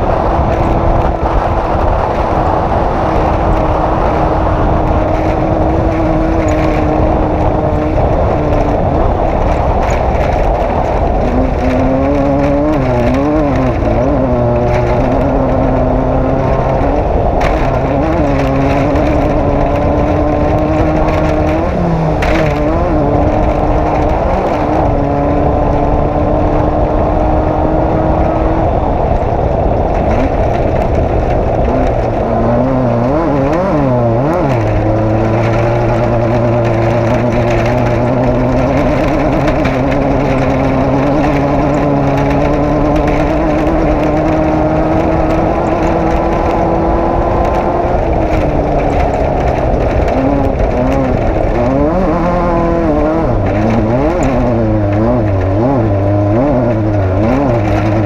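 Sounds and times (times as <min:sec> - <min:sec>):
engine running hard: 0:00.0 - 0:58.0.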